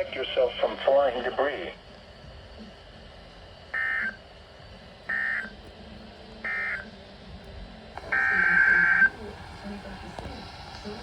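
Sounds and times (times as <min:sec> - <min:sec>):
low steady radio hiss: 0:00.0 - 0:11.0
buzzy electronic data bursts: 0:08.0 - 0:11.0.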